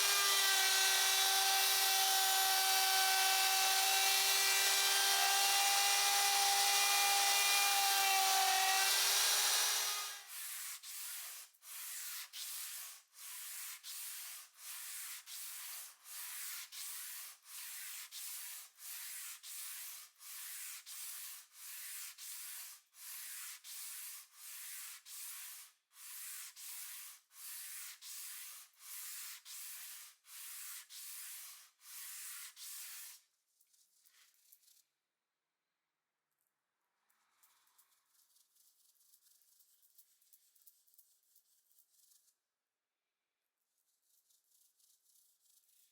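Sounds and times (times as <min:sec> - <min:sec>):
power tool motor humming: 0:00.0 - 0:10.2
sandpaper rubbing: 0:09.0 - 0:33.2, 0:44.0 - 0:45.9.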